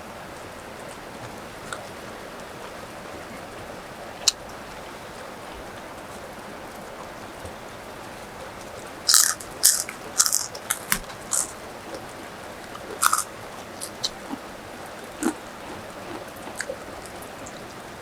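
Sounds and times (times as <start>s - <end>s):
rain hissing: 4.6s - 18.0s
crunchy chewing of crisp food: 8.2s - 18.0s.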